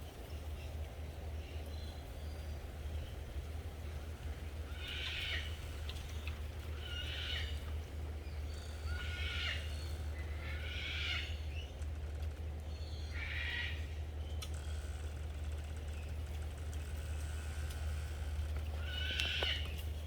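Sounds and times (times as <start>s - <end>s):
animal calling: 18.8s - 19.8s.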